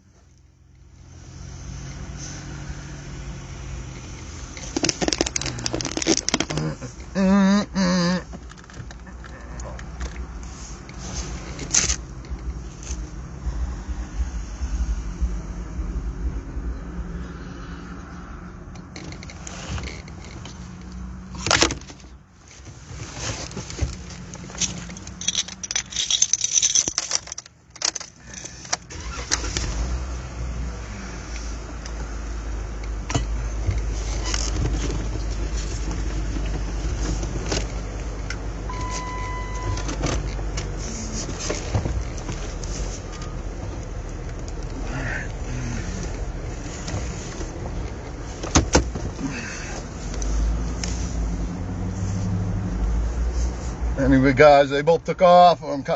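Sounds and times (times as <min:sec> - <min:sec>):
car engine running: 0:00.0 - 0:54.8
rattling and handling noises: 0:03.7 - 0:13.2, 0:18.8 - 0:29.9, 0:31.4 - 0:52.3
keys jangling: 0:04.6 - 0:06.8, 0:24.5 - 0:28.6.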